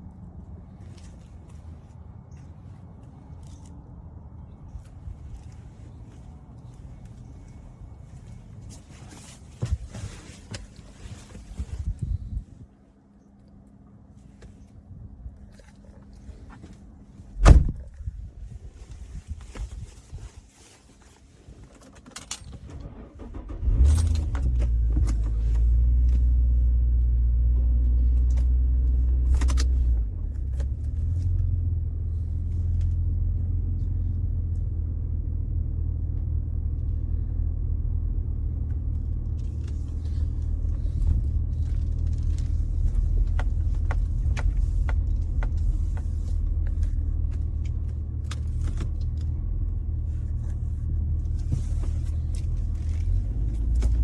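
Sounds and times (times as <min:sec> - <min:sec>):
car engine starting and running: 0:17.3 - 0:18.1, 0:22.5 - 0:54.0.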